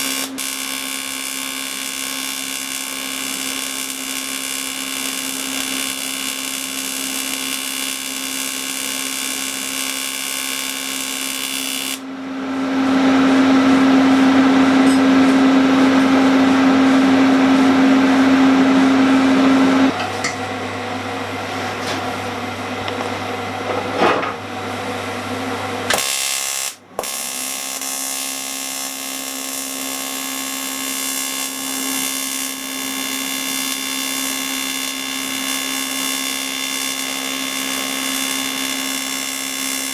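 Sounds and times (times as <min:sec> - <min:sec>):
low hum: 0:12.0 - 0:25.4.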